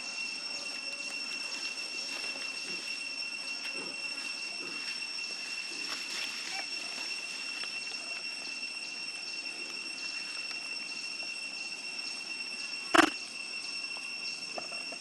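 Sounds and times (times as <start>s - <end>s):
high-pitched insect drone: 0.0s - 15.0s.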